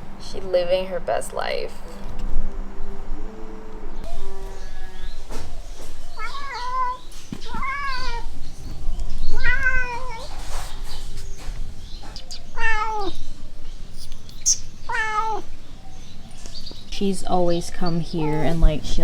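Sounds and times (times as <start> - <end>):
cat meowing: 6.1 - 8.3, 9.3 - 10.4, 12.5 - 13.2, 14.9 - 15.5.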